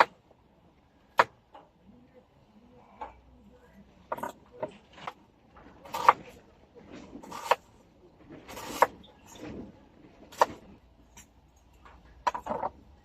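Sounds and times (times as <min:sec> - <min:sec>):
knife slicing onion on board: 0:05.8 - 0:06.3, 0:07.2 - 0:07.7, 0:08.5 - 0:09.0.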